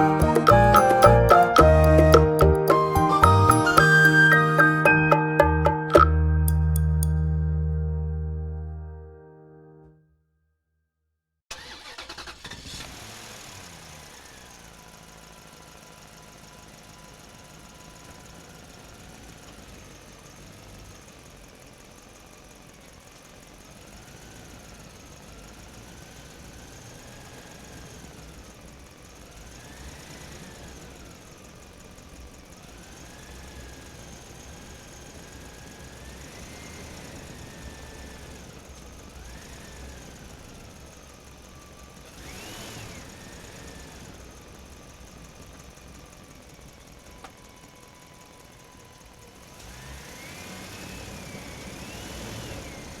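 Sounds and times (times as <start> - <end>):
small motor whining: 33.0 - 44.8.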